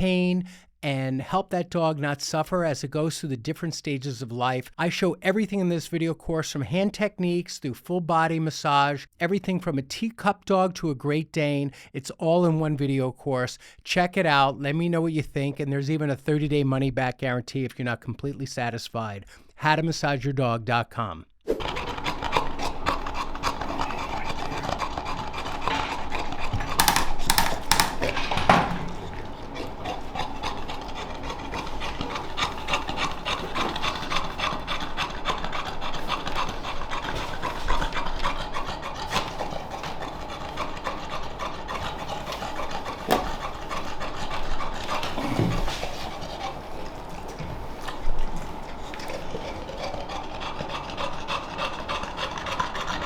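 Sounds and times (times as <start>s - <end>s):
hands scratching dog's coat: 21.6s - 49.5s.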